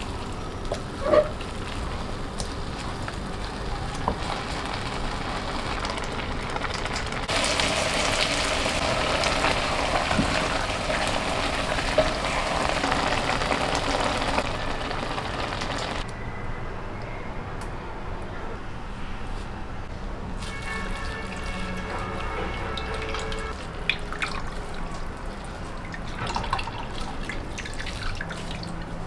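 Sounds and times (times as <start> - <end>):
food sizzling in a pan: 0.0 - 16.0.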